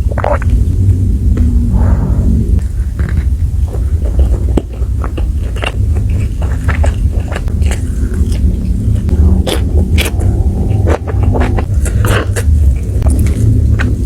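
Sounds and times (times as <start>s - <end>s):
steady low rumble: 0.0s - 14.0s
person chewing crunchy food: 3.7s - 14.0s.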